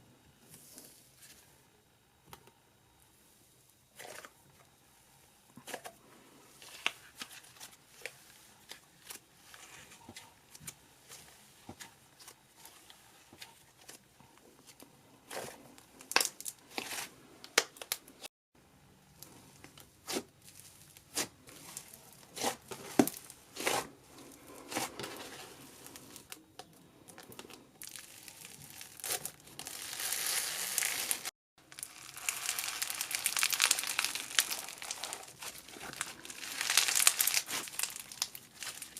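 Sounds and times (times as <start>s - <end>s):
slime squished by hand: 27.8s - 38.9s.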